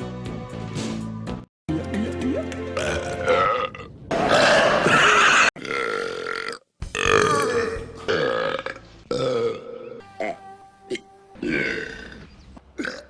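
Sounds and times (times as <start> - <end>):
person belching: 2.8 - 12.2, 12.8 - 13.0.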